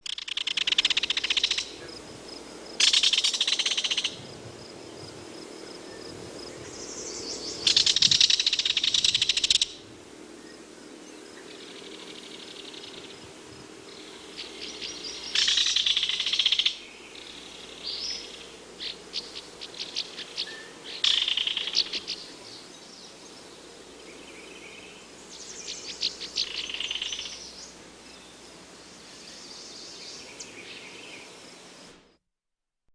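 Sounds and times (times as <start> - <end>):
kingfisher rattling call: 0.0 - 1.8, 2.8 - 4.2, 7.6 - 9.8, 14.4 - 16.8, 18.8 - 22.2.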